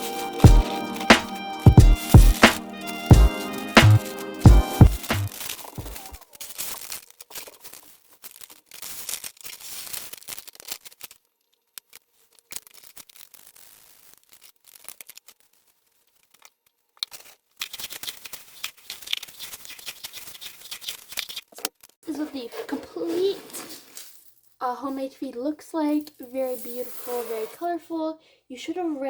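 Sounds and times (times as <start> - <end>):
dry grain rustling: 0.0 - 10.6, 12.1 - 16.4, 22.1 - 24.6, 26.3 - 27.6.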